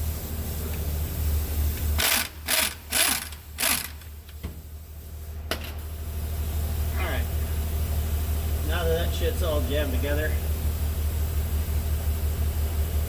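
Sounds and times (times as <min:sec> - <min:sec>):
truck engine idling: 0:00.0 - 0:13.0
air impact wrench bursts: 0:00.9 - 0:04.4.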